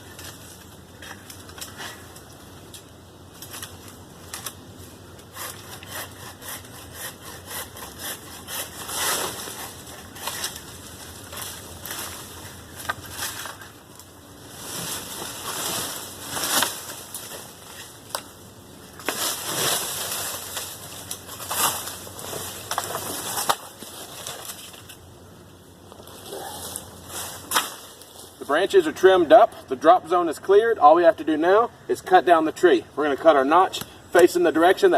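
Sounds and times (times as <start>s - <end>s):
brush crunching and rustling: 0.0s - 6.3s, 7.8s - 29.6s
branches snapping: 0.0s - 6.8s, 8.0s - 25.0s, 25.9s - 28.4s.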